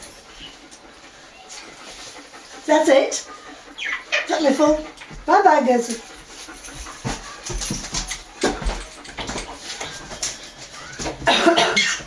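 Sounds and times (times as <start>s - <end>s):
parrot squeaks and clicks: 3.8s - 4.3s.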